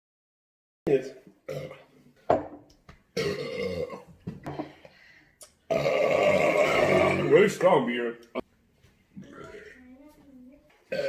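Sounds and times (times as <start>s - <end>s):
man burping: 1.4s - 2.0s, 3.2s - 4.1s, 5.6s - 7.5s.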